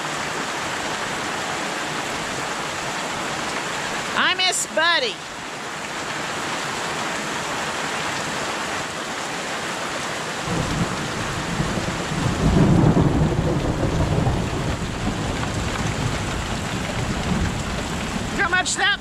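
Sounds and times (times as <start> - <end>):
steady rain falling: 0.0 - 19.0
thunder rumbling low: 10.5 - 18.4.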